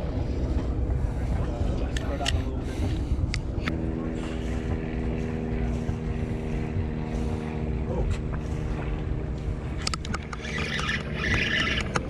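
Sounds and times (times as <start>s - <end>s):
boat engine rumbling: 0.0s - 12.0s
sharp clicks and rattles: 9.8s - 12.0s.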